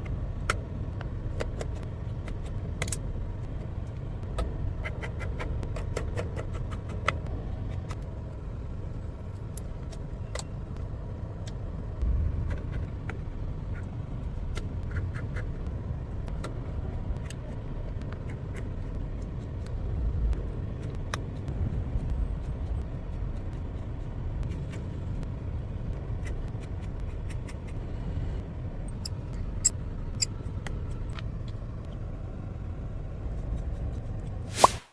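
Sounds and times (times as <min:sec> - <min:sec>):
idling car engine rumble: 0:07.0 - 0:34.4.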